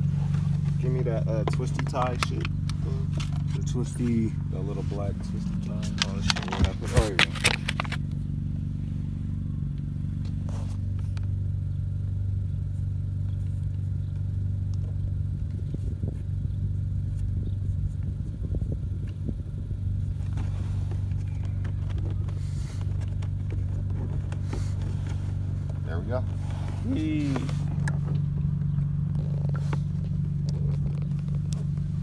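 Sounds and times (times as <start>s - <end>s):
car engine idling: 0.0s - 32.0s
scraping and rustling of plastic trim: 4.9s - 8.0s.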